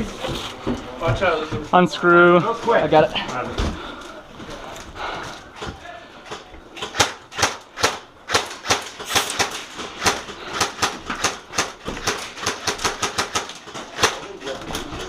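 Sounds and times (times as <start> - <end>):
airsoft guns firing: 6.8 - 14.4.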